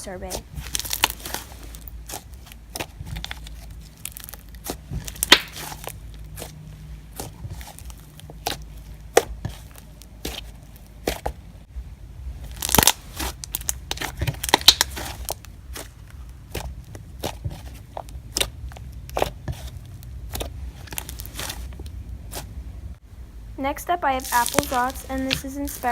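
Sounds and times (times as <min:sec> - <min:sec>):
slime clicking and popping: 0:02.1 - 0:06.5, 0:12.5 - 0:15.9, 0:16.5 - 0:21.5, 0:24.2 - 0:25.9.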